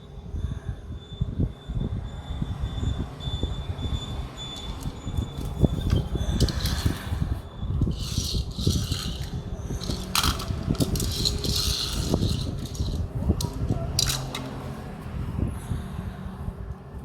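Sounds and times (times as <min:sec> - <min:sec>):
toy car and packaging rattling: 0:04.5 - 0:14.7.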